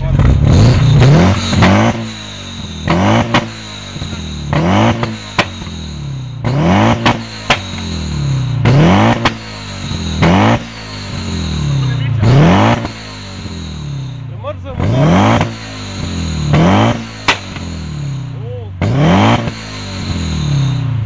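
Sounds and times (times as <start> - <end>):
exhaust pops and cracks: 0.0 - 5.8, 6.4 - 8.0, 8.6 - 11.2, 14.4 - 18.0
car engine revving: 0.0 - 21.0.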